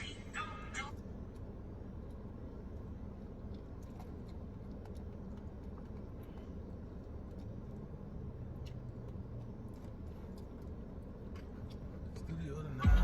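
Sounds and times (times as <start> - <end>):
car road noise rumble: 0.0 - 13.0.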